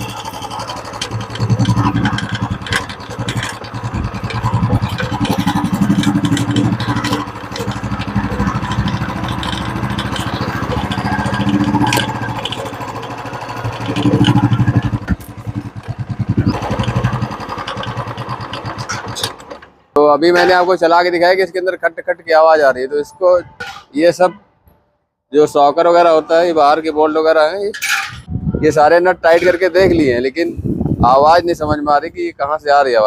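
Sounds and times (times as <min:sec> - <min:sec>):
motorcycle engine running: 0:00.0 - 0:19.6.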